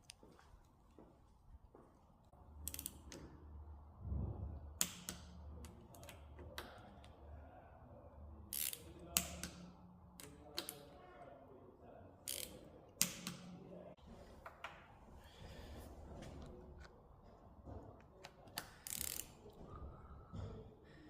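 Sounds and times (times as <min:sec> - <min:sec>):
clicks of bike parts and tools: 0:02.6 - 0:03.4, 0:04.8 - 0:07.2, 0:08.5 - 0:11.0, 0:12.2 - 0:13.6, 0:18.0 - 0:19.5.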